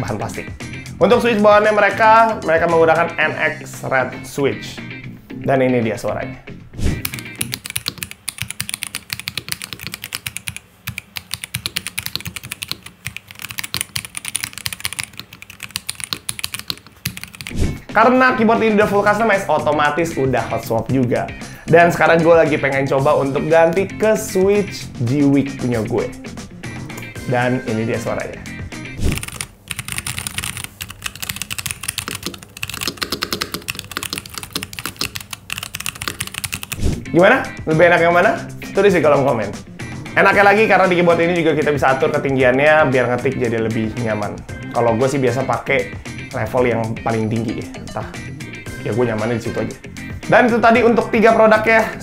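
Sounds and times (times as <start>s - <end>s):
mechanical keyboard typing: 7.0s - 17.6s, 29.0s - 36.8s.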